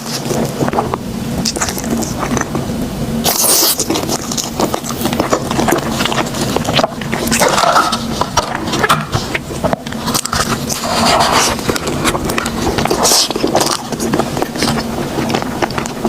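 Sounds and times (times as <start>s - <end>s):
chewing bread with mouth clicks: 0.0s - 2.6s, 3.3s - 16.0s
crackly burst: 0.0s - 16.0s.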